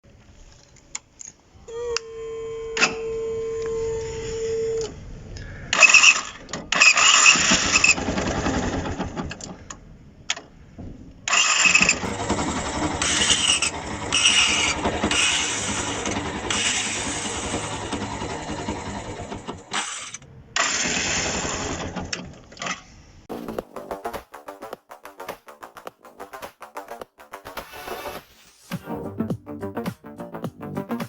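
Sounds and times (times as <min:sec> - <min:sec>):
starter motor cranking: 0:05.8 - 0:09.7, 0:11.3 - 0:22.7
motorcycle engine running: 0:12.0 - 0:19.7.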